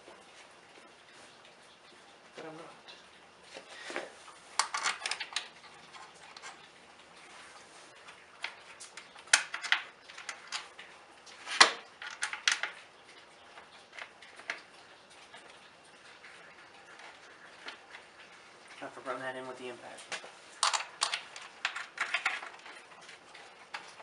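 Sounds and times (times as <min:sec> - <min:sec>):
clicks and clinks of small parts: 0:04.6 - 0:06.7, 0:20.6 - 0:22.8.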